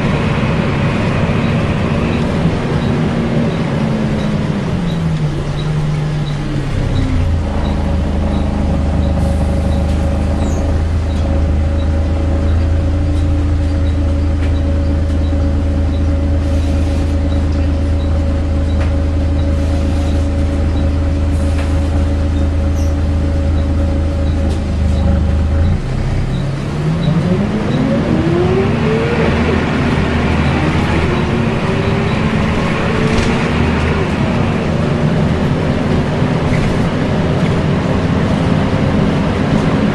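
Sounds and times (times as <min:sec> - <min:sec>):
bus diesel engine: 0:00.0 - 0:39.9
transmission whine: 0:00.0 - 0:39.9.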